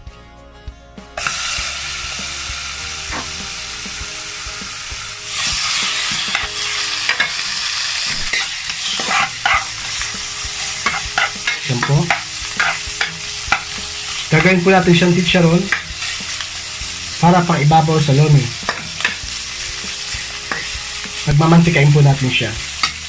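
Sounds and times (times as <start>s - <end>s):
chicken skin sizzling in oil: 1.2s - 23.0s
utensil stirring and scraping pan: 3.1s - 3.5s, 5.2s - 21.3s, 22.6s - 23.0s.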